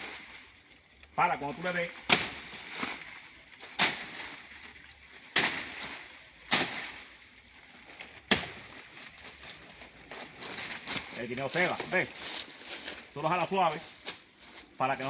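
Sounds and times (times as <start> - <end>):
machete chopping plant stalk: 2.0 - 3.0, 3.8 - 4.4, 5.3 - 7.0, 8.3 - 8.7.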